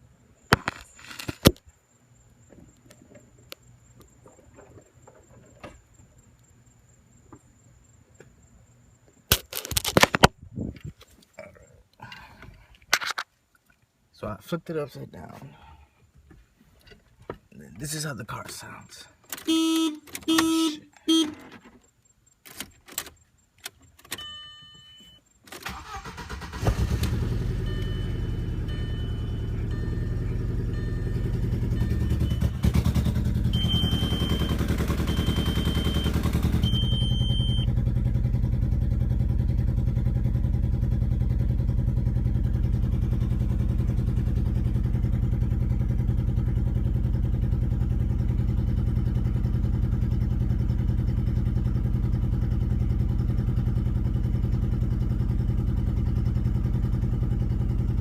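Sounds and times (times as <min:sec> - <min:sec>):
short beeps: 0:24.1 - 0:25.2, 0:27.5 - 0:32.7, 0:33.4 - 0:37.7
car engine running: 0:25.7 - 0:58.0.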